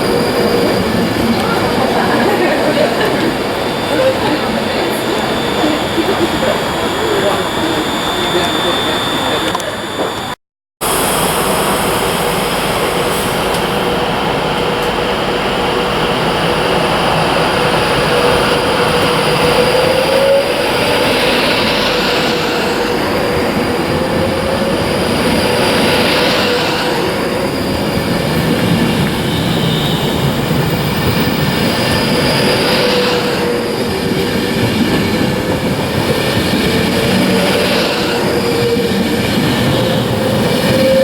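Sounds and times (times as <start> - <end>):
train rumbling on rails: 0.0 - 41.0.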